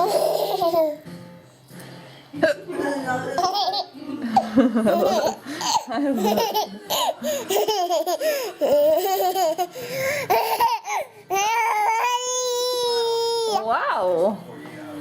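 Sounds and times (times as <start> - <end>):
baby wailing: 8.2 - 13.8.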